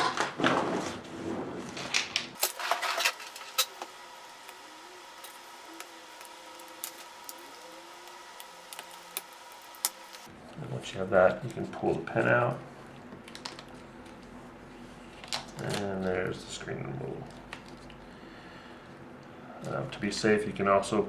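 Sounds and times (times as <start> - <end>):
tape scratchy scraping: 2.4 - 10.3.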